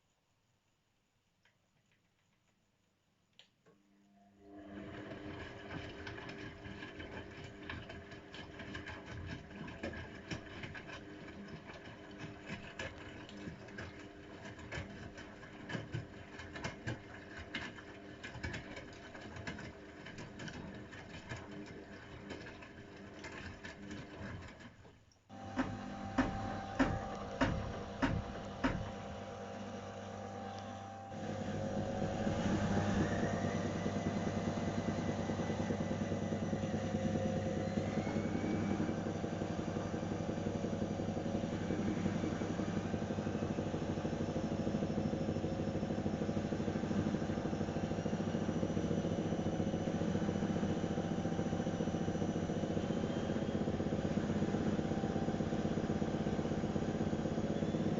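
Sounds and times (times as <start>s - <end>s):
washing machine motor humming: 4.2s - 57.9s
washing machine drum knocking: 25.5s - 29.4s.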